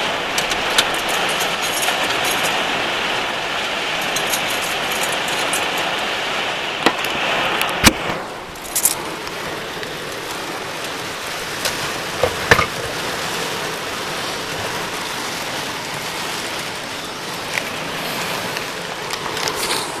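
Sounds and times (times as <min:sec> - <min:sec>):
rain falling: 0:00.0 - 0:20.0.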